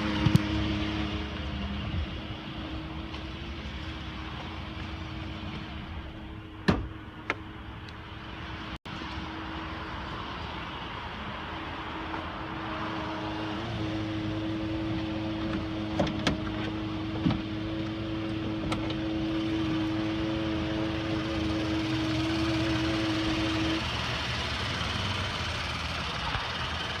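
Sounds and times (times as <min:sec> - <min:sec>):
truck road and engine noise: 0:00.0 - 0:27.0.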